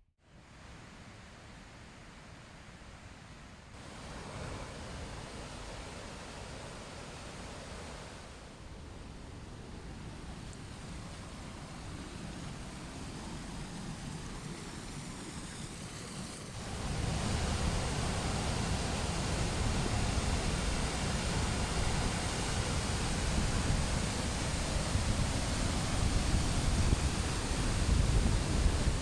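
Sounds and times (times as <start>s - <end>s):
waterfall rushing: 16.6s - 29.0s.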